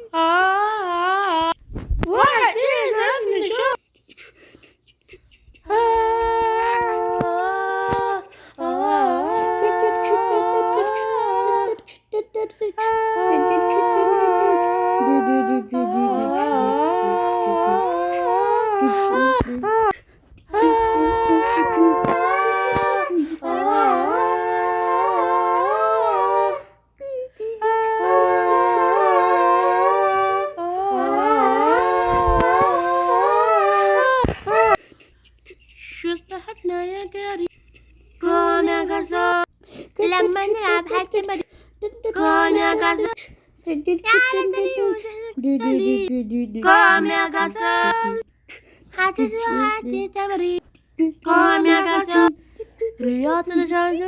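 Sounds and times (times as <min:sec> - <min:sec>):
hummed melody: 0:05.6 - 0:34.8, 0:42.0 - 0:48.2
howl-like singing: 0:05.7 - 0:34.8, 0:41.9 - 0:43.2, 0:44.0 - 0:48.2, 0:51.2 - 0:52.3.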